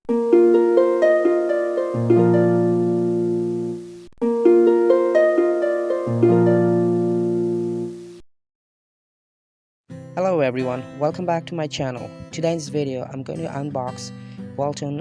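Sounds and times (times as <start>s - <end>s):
quick plucked notes: 0.1s - 7.9s
low held bass note: 2.0s - 4.0s.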